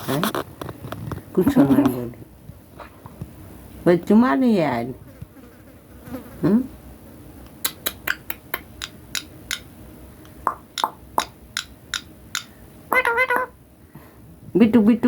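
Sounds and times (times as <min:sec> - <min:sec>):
sharp irregular clicks: 0:07.7 - 0:09.7, 0:10.8 - 0:12.5.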